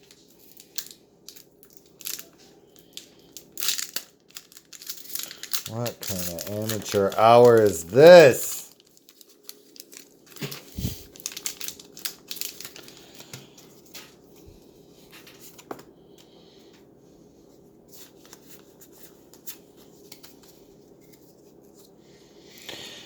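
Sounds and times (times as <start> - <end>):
foil wrapper crinkling and tearing: 0.0 - 14.2
cards rustling: 3.6 - 14.0.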